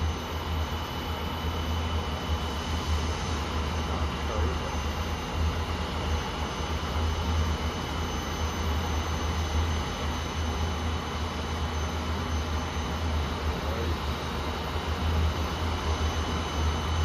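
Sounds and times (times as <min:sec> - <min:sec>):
furnace rumble and hiss: 0:01.1 - 0:08.0, 0:11.0 - 0:17.0.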